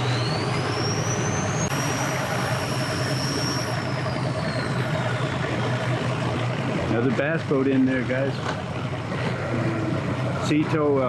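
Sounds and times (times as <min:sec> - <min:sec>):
high whine: 0:00.0 - 0:07.0
engines humming: 0:00.0 - 0:11.0.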